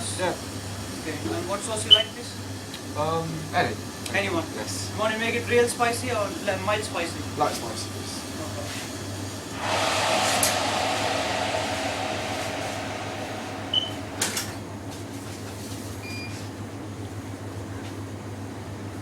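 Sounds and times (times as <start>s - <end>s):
shop equipment hum: 9.5s - 15.7s
hiss: 9.6s - 15.0s.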